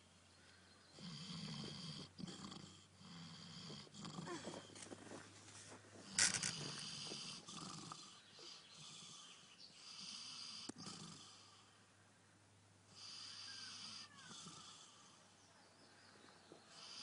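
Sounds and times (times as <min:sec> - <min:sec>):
pig snoring: 0:00.9 - 0:04.7, 0:06.1 - 0:11.7, 0:12.9 - 0:15.2, 0:16.7 - 0:17.0.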